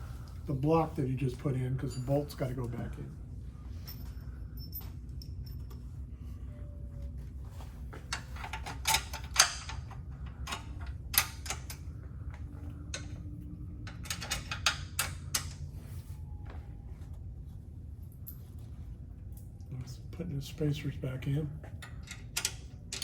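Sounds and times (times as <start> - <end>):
low hum: 0.0 - 23.0
metal tools clinking: 1.4 - 3.0, 3.8 - 6.0, 8.1 - 11.9, 13.9 - 15.7.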